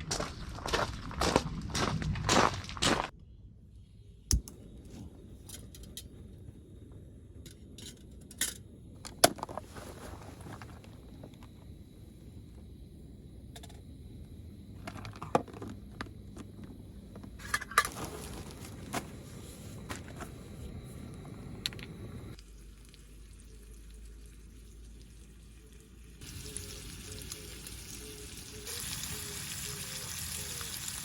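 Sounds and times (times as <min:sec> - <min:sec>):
food sizzling in a pan: 0:26.2 - 0:31.0.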